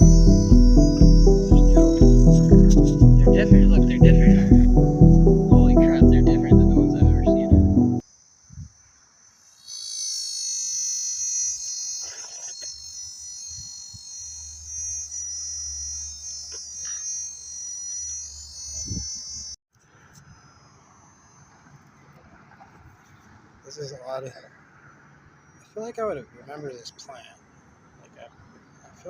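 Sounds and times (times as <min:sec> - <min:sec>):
cicada buzzing: 0:00.0 - 0:19.6, 0:20.4 - 0:22.0.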